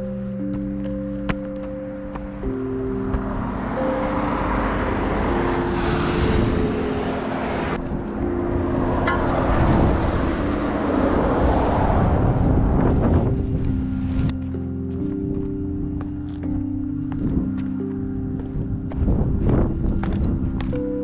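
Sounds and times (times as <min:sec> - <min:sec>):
background music with held notes: 0:00.0 - 0:21.0
loud steady rushing noise: 0:02.3 - 0:16.6.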